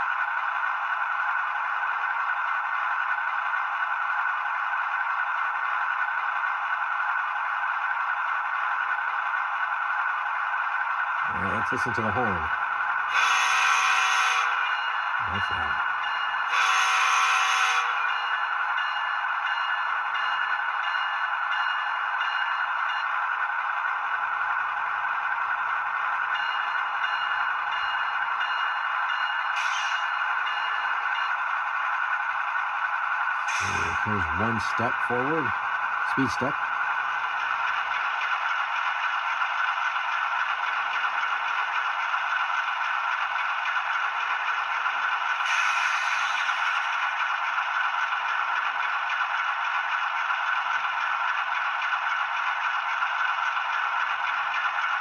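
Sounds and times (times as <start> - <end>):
diesel engine idling sound: 0.0 - 13.0, 15.2 - 15.9, 31.8 - 54.8
model train horn blast: 13.1 - 14.6, 16.5 - 18.0, 33.4 - 34.0
thin diesel engine hum from speaker: 33.4 - 36.6.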